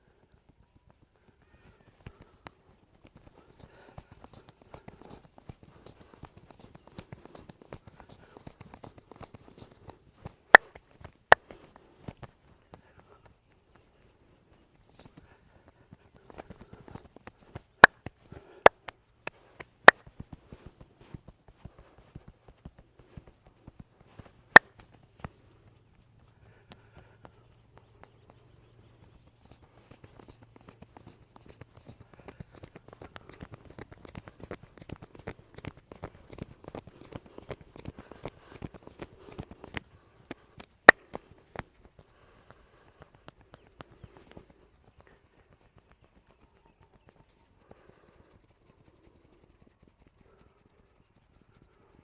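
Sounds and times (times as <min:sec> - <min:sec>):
hands slapping and patting: 0:00.0 - 0:52.0.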